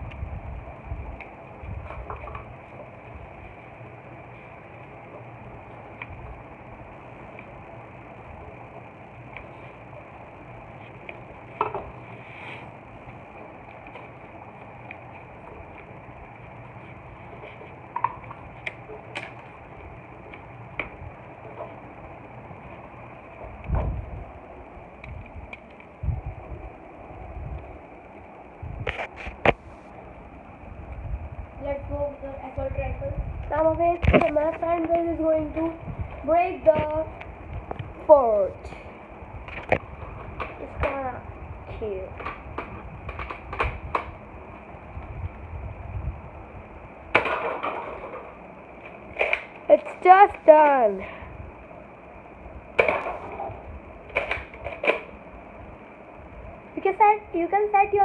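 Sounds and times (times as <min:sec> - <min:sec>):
sharp plastic clicks: 0:42.2 - 0:44.2, 0:54.1 - 0:55.2
clattering crash of target: 0:47.2 - 0:48.3.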